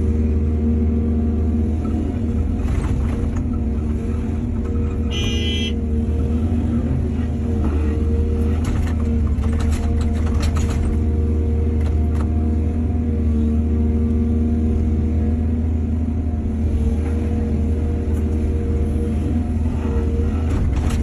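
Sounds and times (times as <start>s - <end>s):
excavator engine droning: 0.0s - 21.0s
clanks and rattles: 8.4s - 11.1s, 20.4s - 21.0s.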